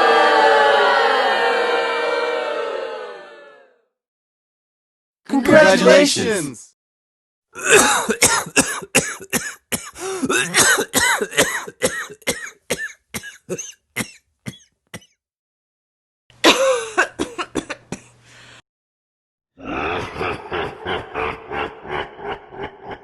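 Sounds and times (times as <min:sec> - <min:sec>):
cough-like vocal sounds: 0:07.5 - 0:15.2, 0:16.4 - 0:18.1, 0:19.6 - 0:23.0.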